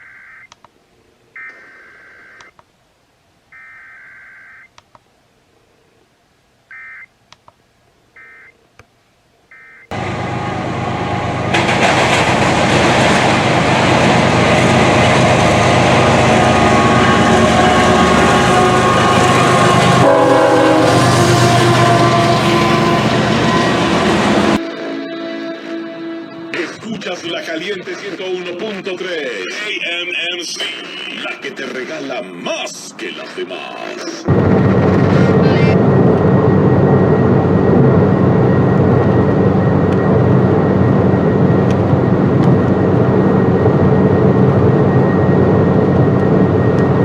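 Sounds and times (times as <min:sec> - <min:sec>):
loud broadcast audio: 0:10.0 - 0:36.0
two-tone warbling data bursts: 0:35.1 - 0:35.8.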